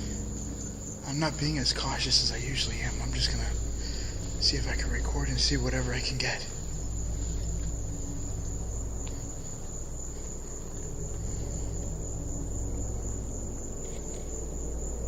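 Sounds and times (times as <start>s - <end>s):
crickets trilling: 0.0s - 15.0s
low rumble: 0.0s - 15.0s
faint clicks: 9.0s - 9.3s.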